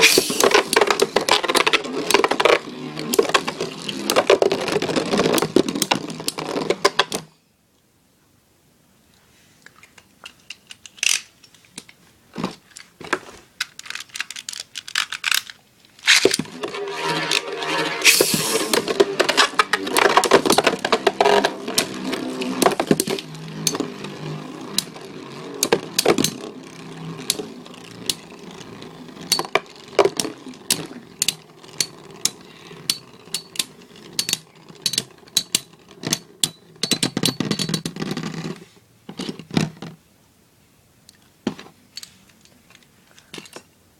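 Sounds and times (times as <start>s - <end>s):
spinning tops clacking together: 0.0s - 5.6s, 16.0s - 37.8s
spinning tops whirring: 0.0s - 5.6s, 16.3s - 36.0s.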